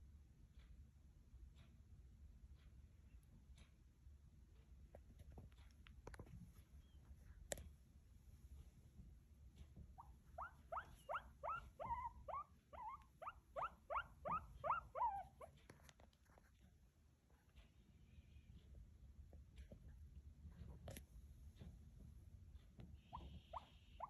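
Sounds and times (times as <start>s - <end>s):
small pet squealing: 10.0s - 15.6s, 23.0s - 24.0s.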